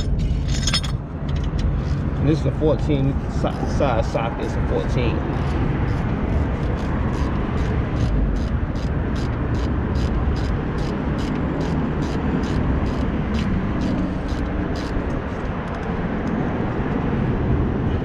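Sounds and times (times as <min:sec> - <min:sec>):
ratchet wrench clicking: 0:00.0 - 0:02.2, 0:02.8 - 0:15.9.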